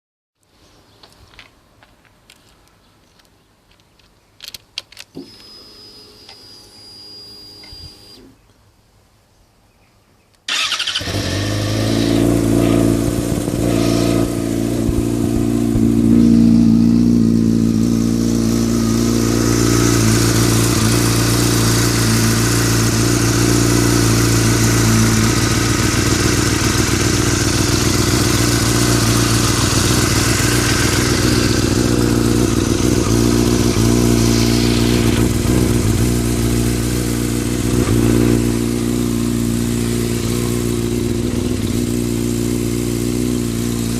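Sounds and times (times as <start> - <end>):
engine rattling: 10.5 - 43.9
motorcycle engine idling: 10.5 - 43.9.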